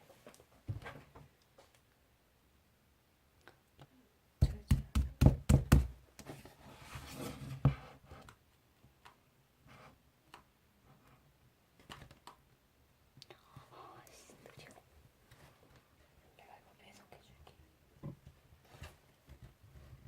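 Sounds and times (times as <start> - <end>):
soft rustling hiss: 6.0 - 20.0.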